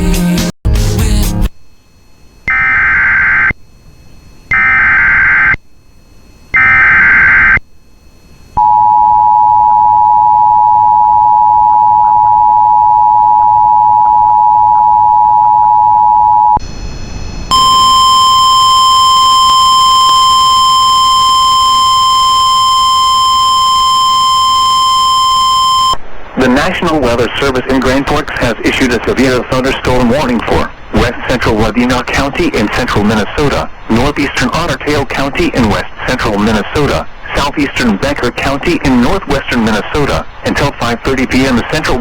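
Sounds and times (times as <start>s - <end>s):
digital data bursts: 4.5s - 5.6s, 6.5s - 7.6s, 17.5s - 42.0s
two-tone attention signal: 17.5s - 26.0s.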